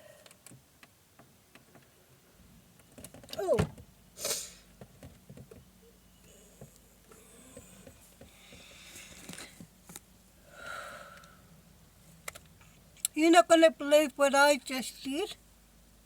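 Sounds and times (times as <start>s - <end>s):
faint breathing: 6.4s - 9.7s, 10.4s - 11.6s.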